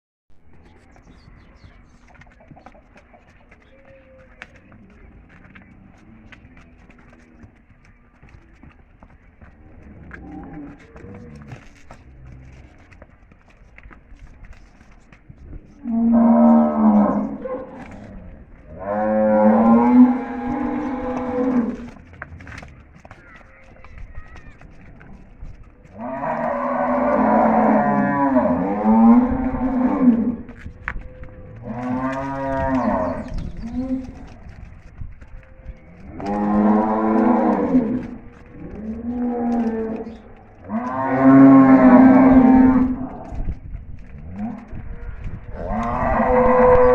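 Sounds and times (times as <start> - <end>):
cattle mooing: 15.8 - 18.1, 18.7 - 22.0, 25.9 - 34.4, 36.0 - 43.3, 44.3 - 46.9.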